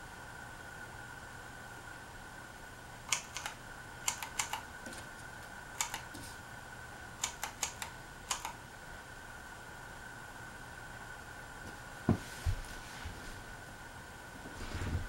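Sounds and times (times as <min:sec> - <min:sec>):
ceiling fan humming: 0:00.0 - 0:15.0
sharp clicks: 0:03.1 - 0:04.7, 0:05.8 - 0:06.1, 0:07.2 - 0:08.6.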